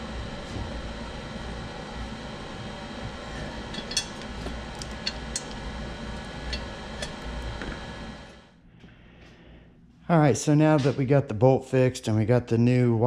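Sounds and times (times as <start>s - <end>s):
steady droning hum: 0.0s - 13.0s
hand tools clinking on metal: 3.7s - 5.6s.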